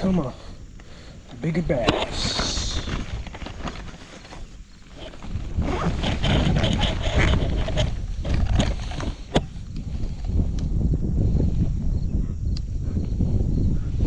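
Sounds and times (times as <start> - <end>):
wind buffeting microphone: 0.0 - 14.0
handling clicks knocks and scrapes: 1.3 - 9.9.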